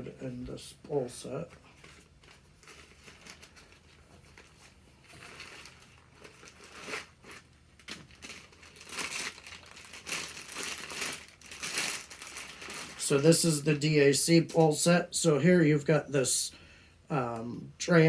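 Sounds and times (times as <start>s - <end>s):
bag crinkling and rustling: 1.3s - 13.6s.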